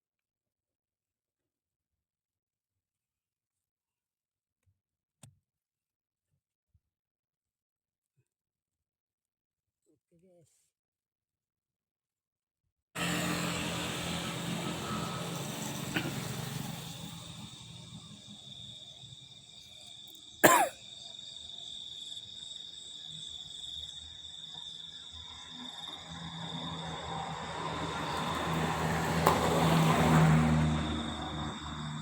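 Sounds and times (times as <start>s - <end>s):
high-pitched whine: 13.0s - 19.8s.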